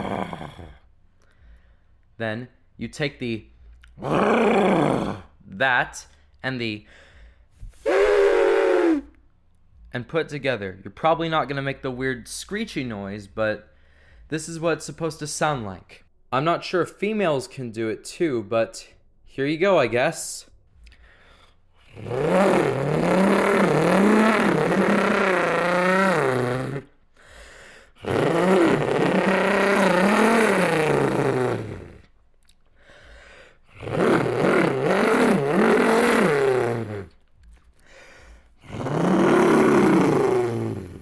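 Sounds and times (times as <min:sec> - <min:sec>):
man imitating race car engine: 0:00.0 - 0:00.8, 0:04.0 - 0:06.0, 0:07.8 - 0:09.1, 0:21.9 - 0:26.9, 0:28.0 - 0:32.0, 0:33.7 - 0:37.1, 0:38.6 - 0:41.0
man breathing: 0:00.0 - 0:02.2, 0:06.1 - 0:09.2, 0:13.7 - 0:14.3, 0:20.8 - 0:41.0.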